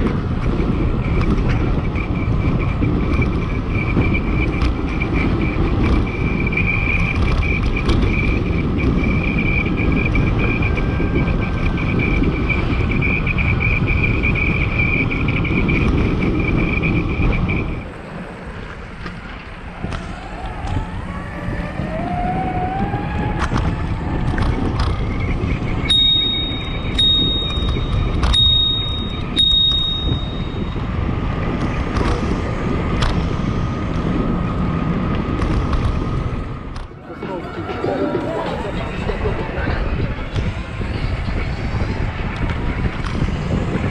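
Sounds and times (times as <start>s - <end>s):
road rumble: 0.0s - 43.9s
wind buffeting microphone: 0.0s - 43.9s
short high beeps: 25.9s - 30.6s
high whine: 33.2s - 43.9s.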